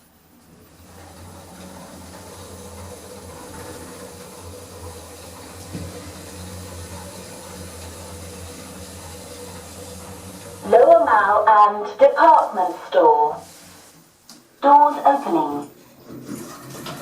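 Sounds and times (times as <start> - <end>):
lift car humming and rushing: 0.0 - 14.0.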